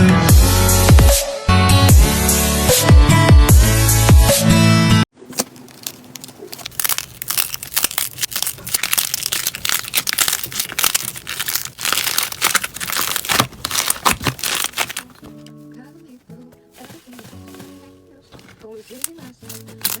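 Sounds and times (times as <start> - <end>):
slime crackling and popping: 5.3 - 15.5, 19.0 - 20.0.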